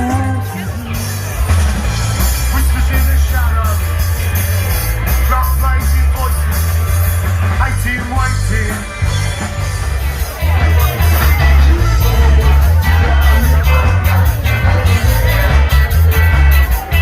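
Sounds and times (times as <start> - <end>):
person singing: 0.0 - 1.4, 10.8 - 16.0
live rock band playing: 0.0 - 17.0.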